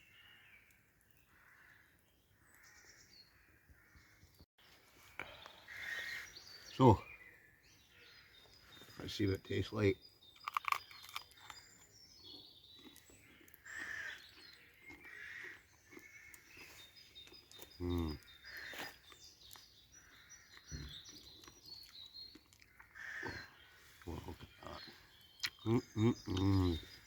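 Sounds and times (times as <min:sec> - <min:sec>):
birds chirping: 0:00.0 - 0:27.0
man chewing crunchy food: 0:10.3 - 0:27.0
man humming mmm: 0:17.8 - 0:18.2, 0:25.6 - 0:26.9.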